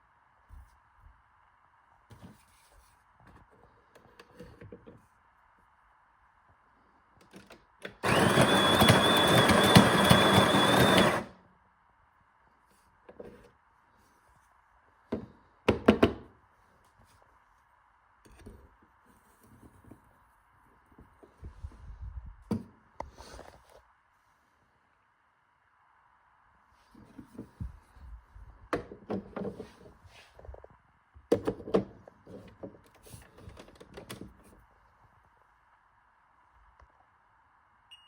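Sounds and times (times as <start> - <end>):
coffee machine motor whining: 8.0 - 11.3.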